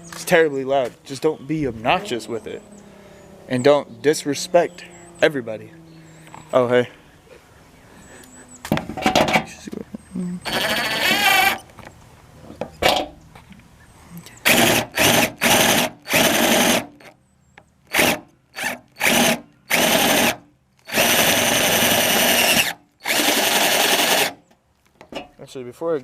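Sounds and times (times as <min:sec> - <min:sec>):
power drill bursts: 0:10.4 - 0:11.6, 0:14.4 - 0:17.1, 0:17.9 - 0:24.4.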